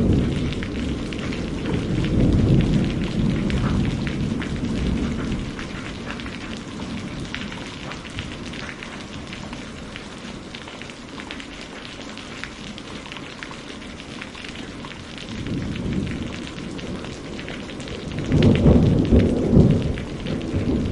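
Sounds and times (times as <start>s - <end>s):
thunder rumbling: 0.0s - 10.5s, 14.7s - 20.9s
heavy rain: 0.0s - 20.9s.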